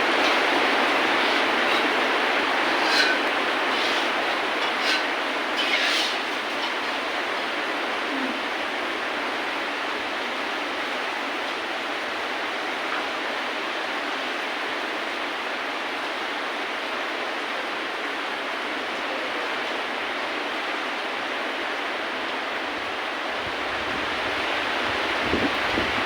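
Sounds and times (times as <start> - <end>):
rain falling: 0.0 - 26.0.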